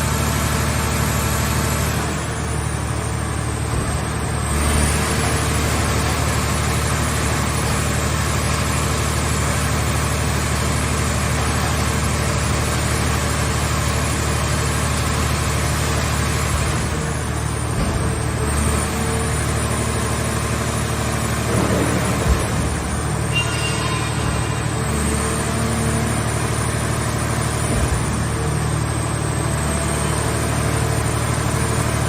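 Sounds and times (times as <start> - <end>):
heavy engine running: 0.0 - 32.0.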